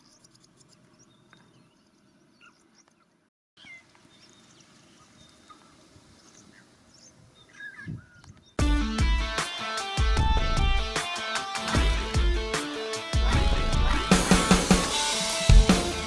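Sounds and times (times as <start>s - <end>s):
bush ambience: 0.0s - 8.6s
faint bird chirps: 0.0s - 8.6s
music: 8.6s - 16.0s.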